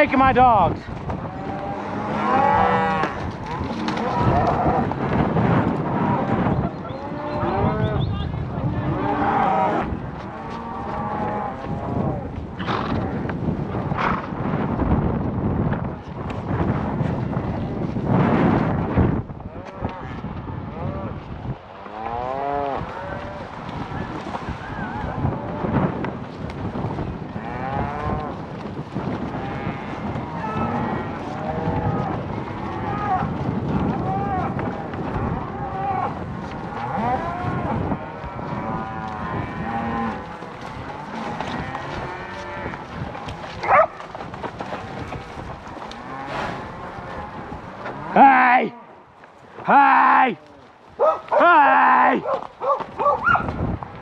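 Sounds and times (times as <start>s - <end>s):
wind buffeting microphone: 0.0s - 51.5s, 52.2s - 54.0s
cattle mooing: 1.2s - 5.1s, 5.8s - 8.0s, 8.7s - 13.2s, 19.5s - 21.2s, 21.8s - 25.8s, 27.2s - 28.4s, 29.2s - 44.0s, 44.6s - 49.0s.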